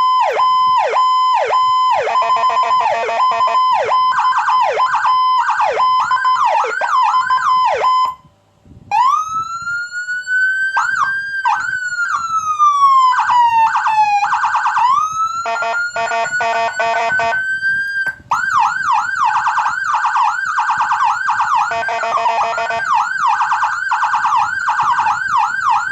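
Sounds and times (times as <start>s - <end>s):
electronic siren: 0.0s - 8.3s, 8.9s - 25.9s.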